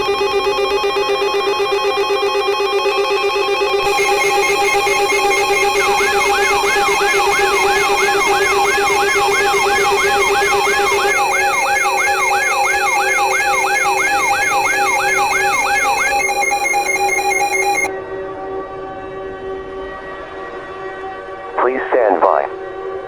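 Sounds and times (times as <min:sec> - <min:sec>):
electronic chord tones: 0:00.0 - 0:17.9
falling siren-like sweep: 0:03.8 - 0:17.9.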